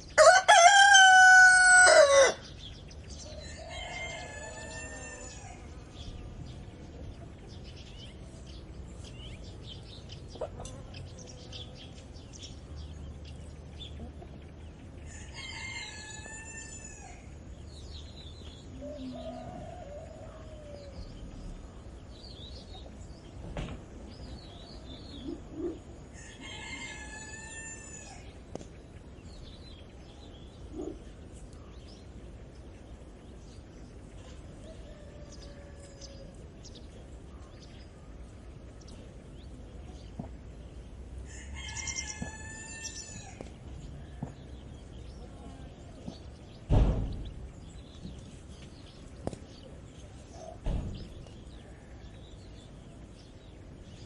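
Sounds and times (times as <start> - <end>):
rooster crowing: 0.2 - 2.5, 3.3 - 5.6, 15.1 - 17.3, 26.1 - 28.3, 34.6 - 36.4, 41.2 - 43.5
small birds chirping: 2.1 - 54.0
low rural rumble: 2.4 - 54.0.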